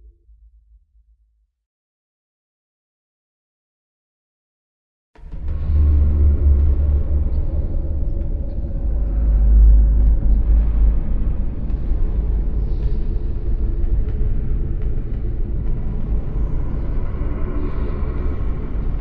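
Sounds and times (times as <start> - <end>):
deep steady rumble: 5.2 - 19.0.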